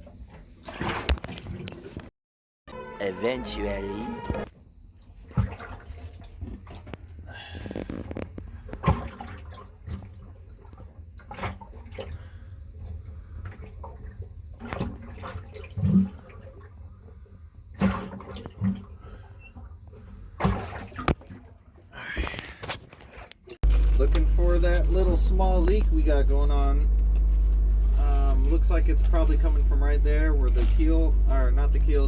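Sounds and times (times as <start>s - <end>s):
water sloshing: 0.0s - 2.1s, 5.0s - 32.0s
low rumble: 23.6s - 32.0s.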